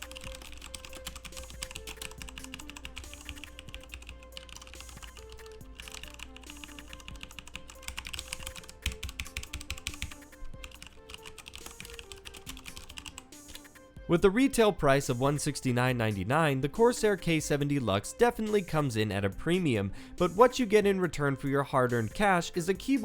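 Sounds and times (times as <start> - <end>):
mechanical keyboard typing: 0.0 - 13.6
background music: 0.0 - 23.0.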